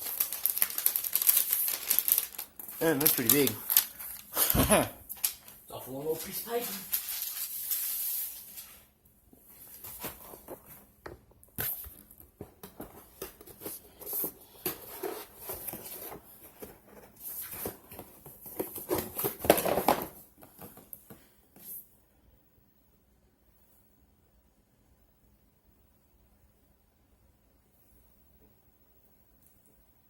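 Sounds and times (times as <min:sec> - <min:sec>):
paper rustling: 0:00.0 - 0:08.8.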